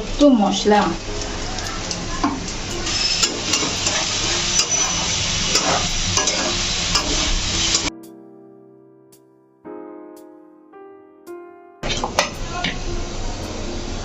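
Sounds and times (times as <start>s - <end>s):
noodles sizzling in a frying pan: 0.0s - 7.9s, 11.8s - 14.0s
soft piano music: 0.0s - 14.0s
spoon scraping a pan: 1.7s - 7.9s, 11.8s - 12.8s.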